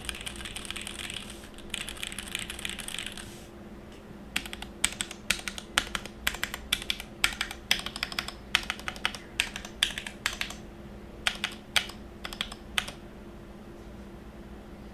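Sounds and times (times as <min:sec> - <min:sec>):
mechanical keyboard typing: 0:00.0 - 0:03.3, 0:04.4 - 0:10.6, 0:11.2 - 0:13.0.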